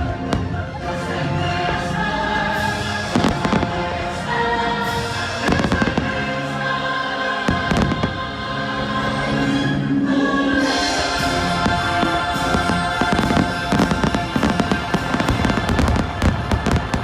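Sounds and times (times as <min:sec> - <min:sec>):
choir singing held chords: 0:00.0 - 0:17.0
fireworks bursting and crackling: 0:02.6 - 0:06.6, 0:07.4 - 0:08.4, 0:10.6 - 0:17.0.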